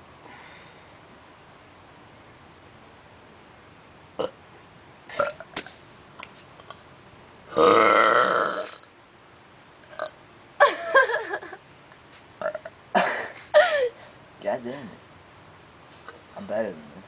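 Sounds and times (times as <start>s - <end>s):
person burping loudly: 5.1s - 5.5s, 7.5s - 8.9s, 9.9s - 10.2s, 12.4s - 13.3s.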